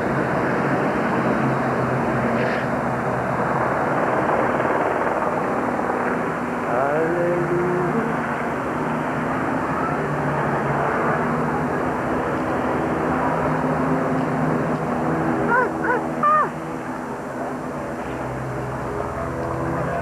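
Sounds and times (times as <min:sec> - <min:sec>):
many overlapping voices: 0:04.0 - 0:20.0.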